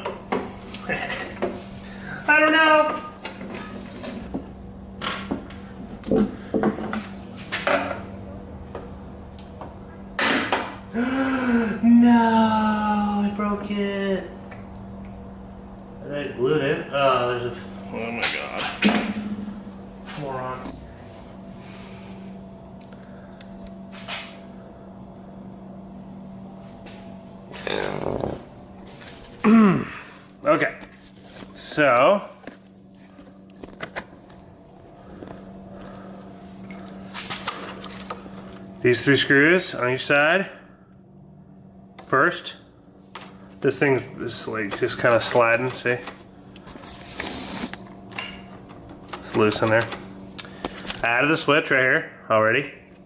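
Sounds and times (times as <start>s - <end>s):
faint hum: 0.0s - 53.0s
scrape: 46.9s - 47.7s.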